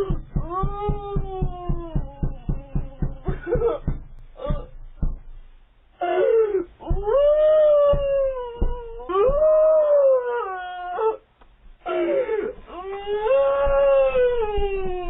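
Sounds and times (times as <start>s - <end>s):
woman wailing: 0.0s - 4.8s, 6.0s - 11.2s, 11.9s - 15.0s
banging on door: 0.0s - 5.7s, 6.8s - 9.8s.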